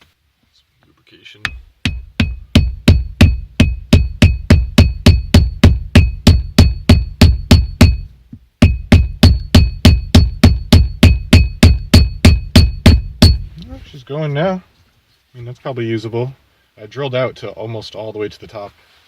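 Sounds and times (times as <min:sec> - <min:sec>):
hammer striking wood on metal: 0:01.4 - 0:13.5.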